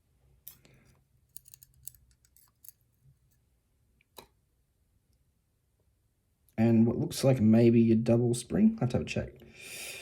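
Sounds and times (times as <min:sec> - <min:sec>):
small clicks of lock parts: 0:00.4 - 0:02.9.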